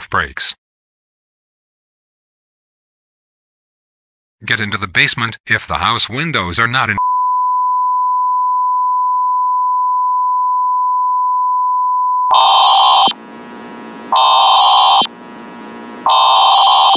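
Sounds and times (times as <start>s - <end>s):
harsh buzzing bursts: 12.3s - 16.9s
loud steady alert tone: 12.3s - 16.9s.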